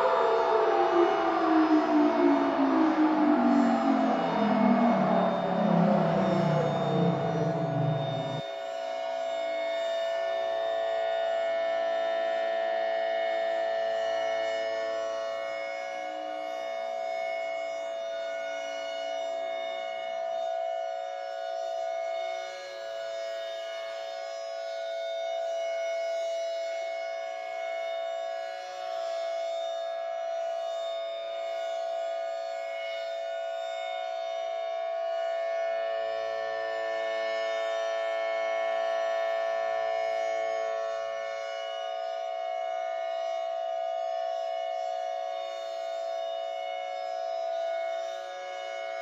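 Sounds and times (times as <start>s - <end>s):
siren tone like organ chord: 0.0s - 11.6s
civil defense siren two-note chord: 0.0s - 49.0s.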